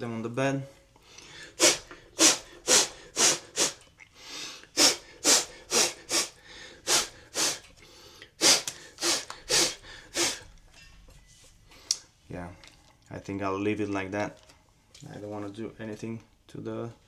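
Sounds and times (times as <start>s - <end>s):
person blowing sharp puffs: 1.3s - 10.6s.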